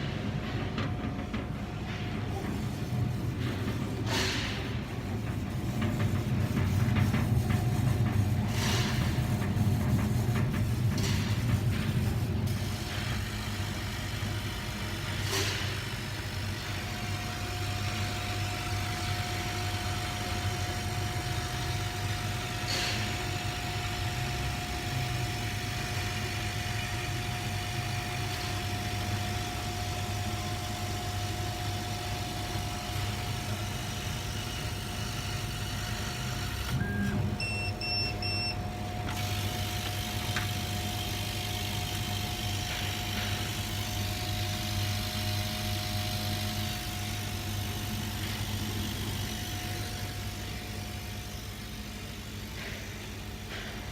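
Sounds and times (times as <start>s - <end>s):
short electronic beeps: 36.8s - 38.6s.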